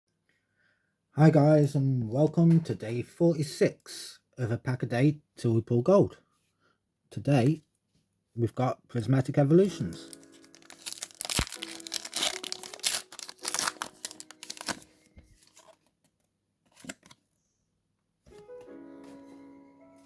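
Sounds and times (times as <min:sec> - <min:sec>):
foil wrapper tearing and crinkling: 0:10.0 - 0:15.8.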